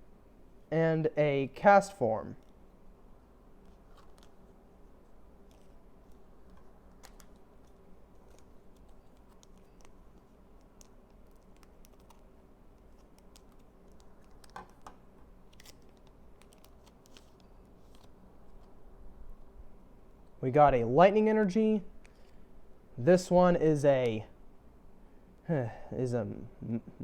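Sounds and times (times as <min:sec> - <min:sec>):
low room hum: 0:00.0 - 0:27.0
cards and wrappers handled: 0:03.4 - 0:18.9.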